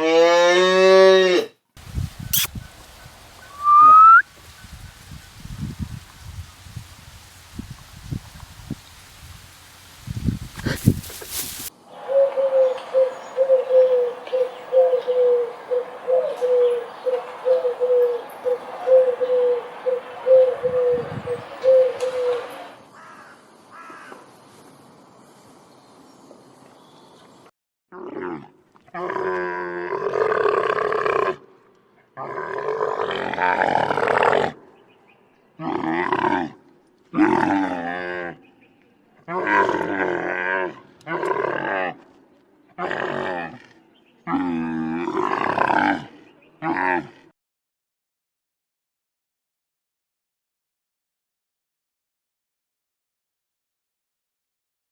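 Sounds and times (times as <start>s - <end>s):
faint high chirps: 2.3s - 2.7s, 3.4s - 4.3s
bird cooing: 3.4s - 4.2s, 11.9s - 22.8s
large animal calling: 3.4s - 4.2s.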